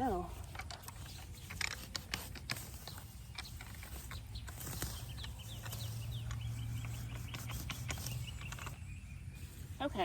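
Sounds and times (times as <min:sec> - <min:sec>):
weeds being pulled rustling: 0:00.0 - 0:10.0
high bird chirps: 0:02.6 - 0:10.0.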